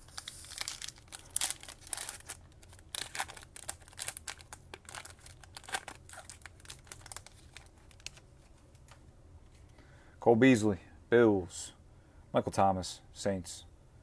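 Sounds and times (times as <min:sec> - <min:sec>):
wrapper tearing and crinkling: 0:00.0 - 0:08.2.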